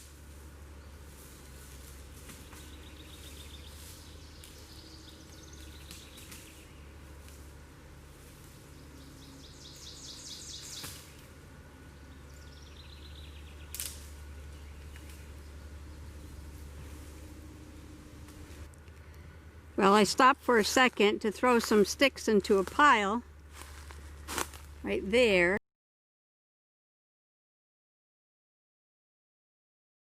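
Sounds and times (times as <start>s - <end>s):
songbird trilling: 2.4s - 6.9s, 8.8s - 11.2s, 12.0s - 16.8s
low rumble: 11.7s - 22.6s.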